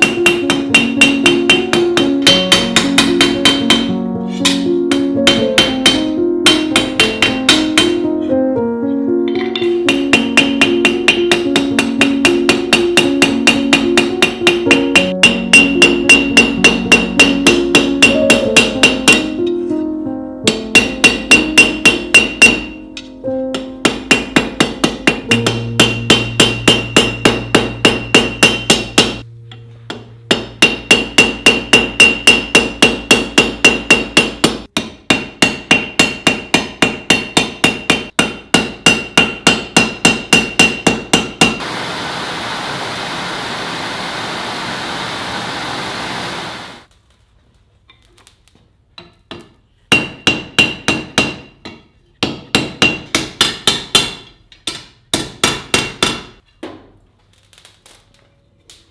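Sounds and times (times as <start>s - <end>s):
hammer striking steel on anvil: 0.0s - 8.2s, 9.3s - 19.6s, 20.5s - 41.7s, 49.0s - 56.4s
steady hiss: 41.6s - 46.9s.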